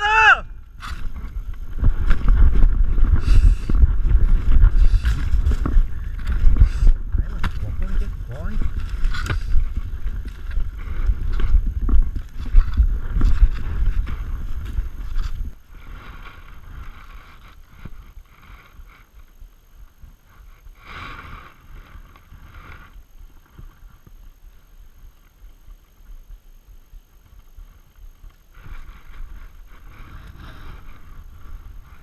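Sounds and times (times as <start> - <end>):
camera jostled by running steps: 0.6 - 15.6
quiet rustling: 0.7 - 32.0.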